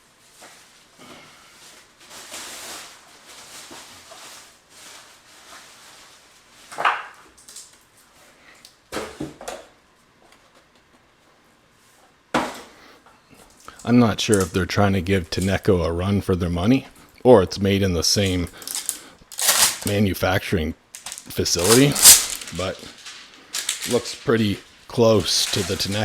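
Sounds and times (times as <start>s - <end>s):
packaging rustling: 18.2s - 20.1s, 20.9s - 26.0s.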